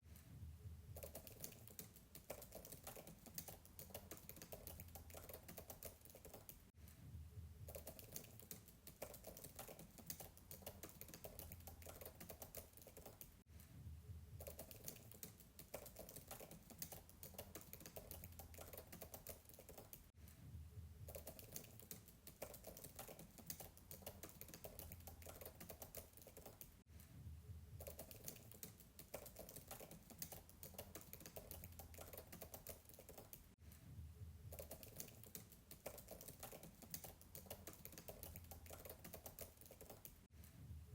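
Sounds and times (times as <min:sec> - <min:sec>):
distant keyboard typing: 0:01.0 - 0:06.6, 0:07.7 - 0:13.3, 0:14.4 - 0:20.1, 0:21.1 - 0:26.6, 0:27.8 - 0:33.4, 0:34.5 - 0:40.2.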